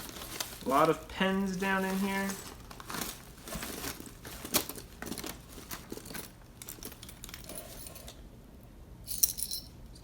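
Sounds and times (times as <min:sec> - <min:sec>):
metal keys jingling: 0:04.5 - 0:08.2, 0:09.1 - 0:10.0.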